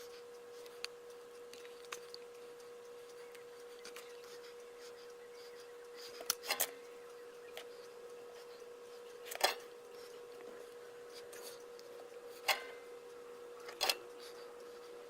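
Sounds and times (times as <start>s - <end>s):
steady electrical hum: 0.0s - 15.0s
small clicks and taps: 0.6s - 12.9s.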